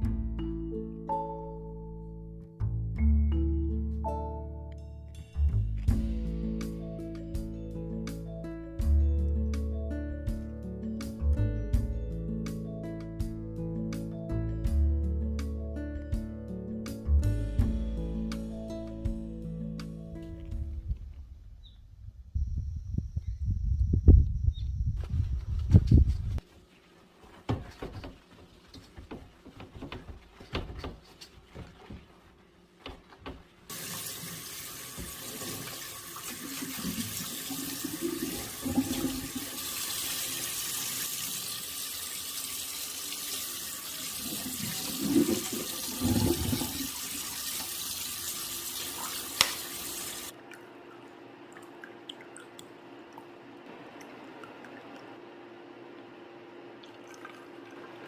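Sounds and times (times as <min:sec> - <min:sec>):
knocks of things being washed: 0:27.2 - 0:41.3, 0:42.6 - 0:50.3
faucet running into sink: 0:33.7 - 0:50.3
water drips: 0:41.5 - 0:55.2, 0:56.8 - 0:58.0.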